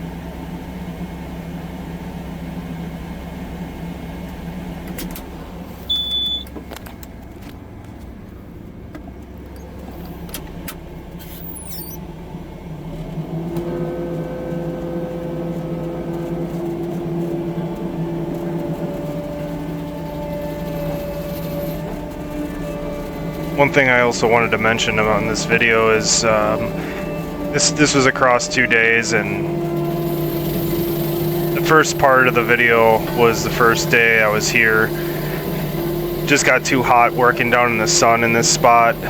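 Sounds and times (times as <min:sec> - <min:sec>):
vehicle engine running: 0:00.0 - 0:39.0
short high beep: 0:05.8 - 0:06.5
steady held tones: 0:13.6 - 0:39.0.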